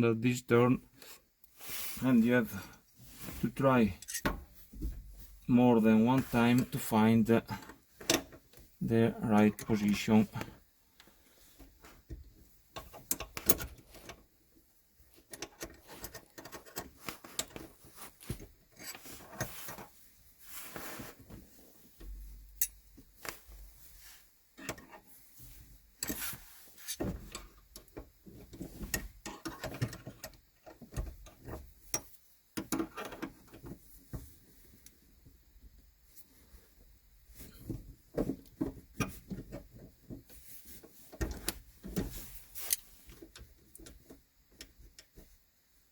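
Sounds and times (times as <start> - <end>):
tool clicking and scraping on metal: 4.0 - 4.4, 28.5 - 30.4.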